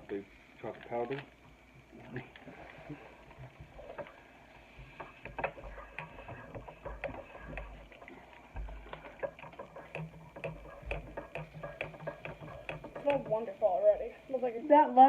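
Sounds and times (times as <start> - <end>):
mug bumps: 8.6 - 13.4.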